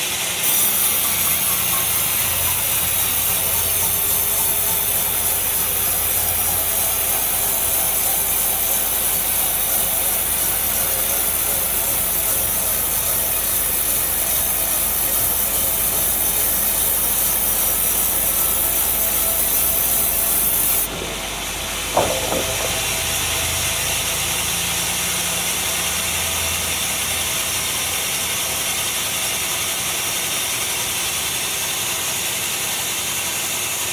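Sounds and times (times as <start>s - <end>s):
low steady running noise: 0.0s - 27.8s
saw cutting through log: 0.0s - 33.9s
short knock: 20.9s - 23.0s.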